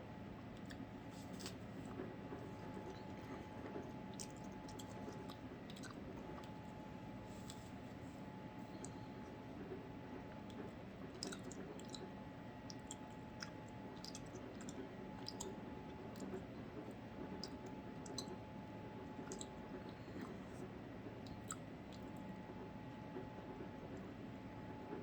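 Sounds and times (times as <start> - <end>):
steady low hum: 0.0 - 25.0
person chewing: 11.2 - 12.1
small mouth clicks: 11.2 - 12.1, 17.4 - 18.4, 19.3 - 20.4, 21.3 - 22.1.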